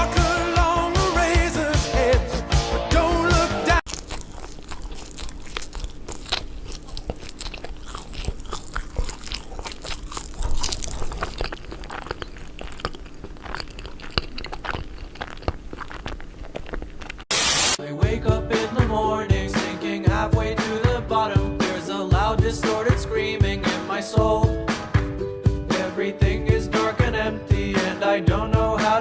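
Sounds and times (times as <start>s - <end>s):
crunching: 3.9s - 17.3s
burst of hiss-like noise: 17.3s - 17.8s.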